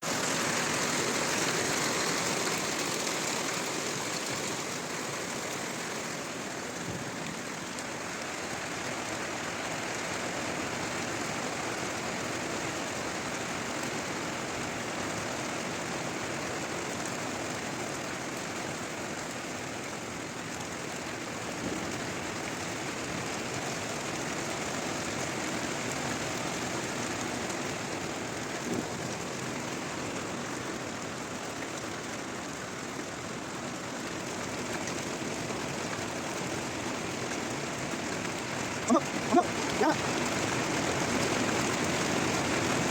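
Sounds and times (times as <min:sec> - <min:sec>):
hail and rain pelting down: 0:00.0 - 0:42.9.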